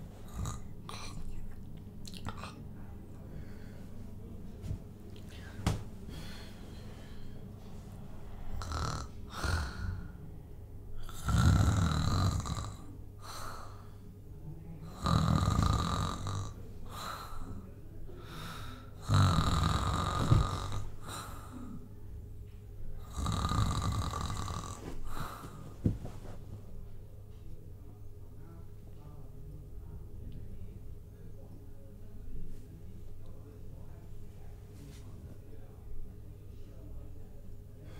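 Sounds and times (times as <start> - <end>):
soft breathing: 2.5 - 10.3, 16.8 - 19.0, 19.9 - 22.0, 22.9 - 28.0
man snoring loudly: 8.6 - 10.0, 11.0 - 12.9, 14.9 - 16.6, 19.0 - 20.9, 23.0 - 25.4.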